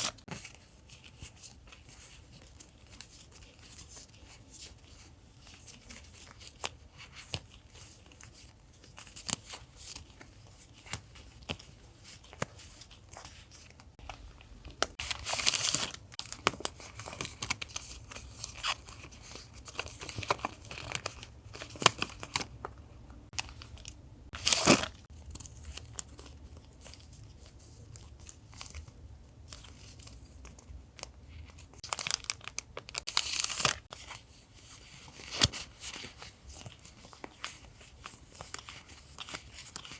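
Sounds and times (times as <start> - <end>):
paper rustling and crinkling: 0.0 - 22.6, 23.3 - 39.9.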